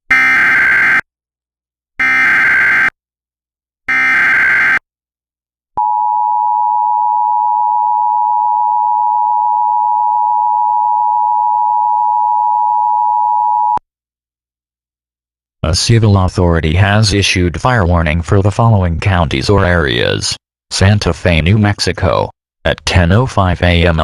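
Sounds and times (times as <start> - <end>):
buzzy digital data tones: 3.9 - 4.8
two-tone attention signal: 3.9 - 4.8.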